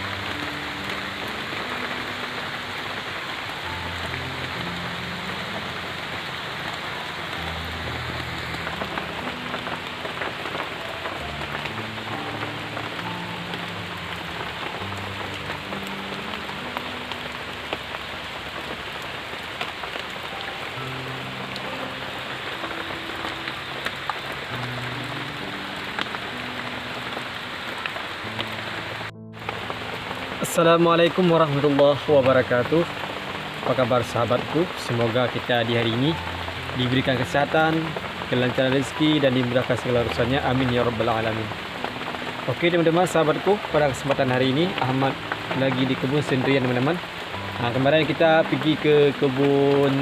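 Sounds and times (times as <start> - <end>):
rain pattering: 0.0 - 50.0
slow low melody: 0.0 - 50.0.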